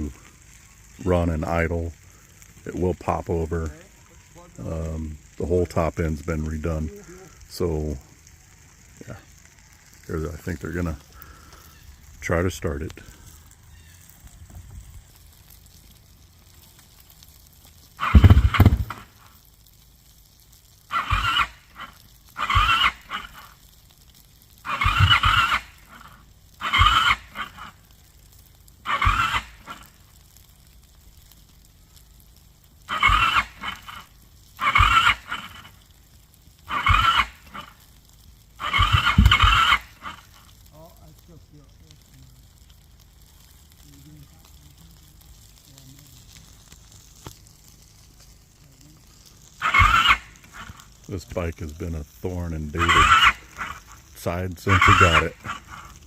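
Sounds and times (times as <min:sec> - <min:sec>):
electric starter cranking engine: 0:18.0 - 0:19.2, 0:20.9 - 0:23.6, 0:24.6 - 0:27.8, 0:28.8 - 0:29.8, 0:32.9 - 0:35.7, 0:36.7 - 0:37.8, 0:38.6 - 0:40.4, 0:49.6 - 0:50.8, 0:52.8 - 0:56.0.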